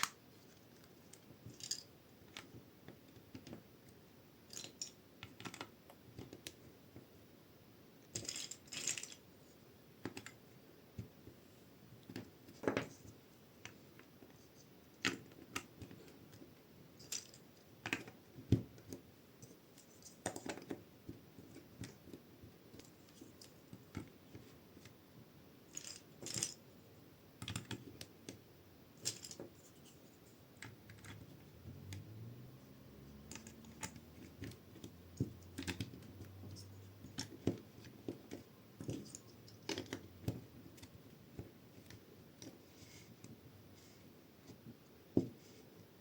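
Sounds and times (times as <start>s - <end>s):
plastic bricks clicking and clattering: 8.1s - 9.2s, 29.0s - 30.0s, 33.3s - 42.6s.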